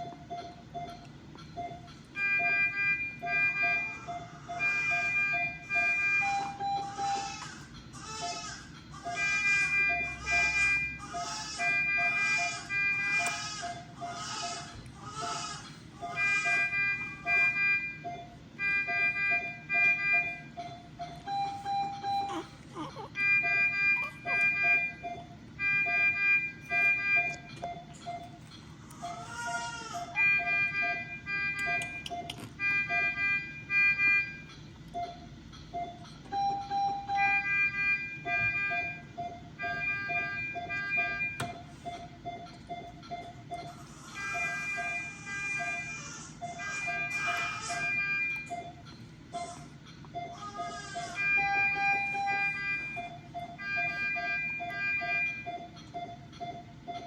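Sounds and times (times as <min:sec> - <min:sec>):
higher alarm beeps: 0:00.0 - 0:07.4, 0:09.1 - 0:14.8, 0:16.0 - 0:28.4, 0:30.2 - 0:48.8, 0:50.2 - 0:57.0
low pulsing alarm tone: 0:00.0 - 0:28.4, 0:29.0 - 0:57.0
newborn baby crying: 0:06.7 - 0:16.4, 0:21.5 - 0:24.9, 0:28.9 - 0:30.2, 0:43.7 - 0:48.0, 0:49.4 - 0:51.5.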